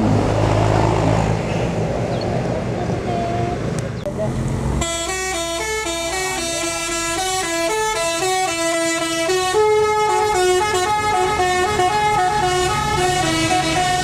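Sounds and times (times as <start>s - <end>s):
bus engine rumble: 0.0s - 14.0s
bus musical horn melody: 4.6s - 14.0s.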